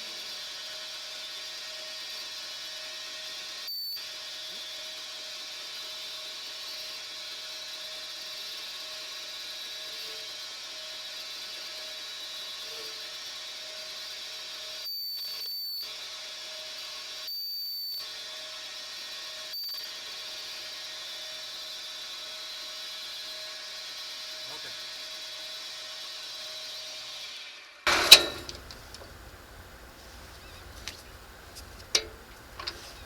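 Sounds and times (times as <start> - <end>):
high-pitched squeals of cutting tool: 27.9 - 31.2
metal lathe running: 27.9 - 33.0.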